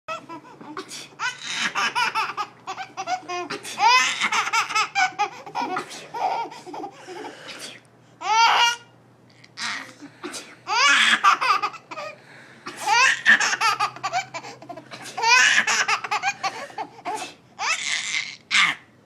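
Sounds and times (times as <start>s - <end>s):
baby laughing: 0.1s - 7.4s, 8.2s - 8.9s, 10.7s - 12.2s, 12.8s - 18.8s
adult fake sneezing: 0.7s - 1.8s, 3.4s - 4.2s, 5.6s - 6.2s, 9.6s - 10.7s, 14.8s - 15.6s, 16.5s - 17.5s.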